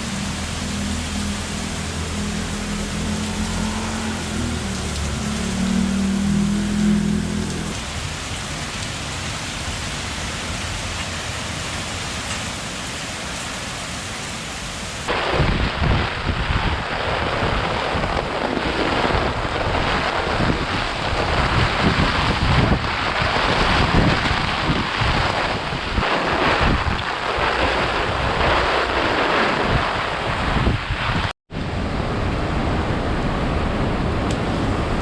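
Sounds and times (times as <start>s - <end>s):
heavy rain hissing: 0.0s - 31.3s
gusty wind buffeting microphone: 15.1s - 35.0s.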